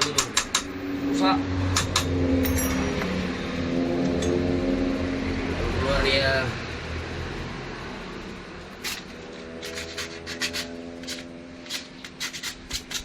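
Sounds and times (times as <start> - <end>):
sharp metal clicks: 0.0 - 0.7
metal parts rubbing and scraping: 8.7 - 13.0.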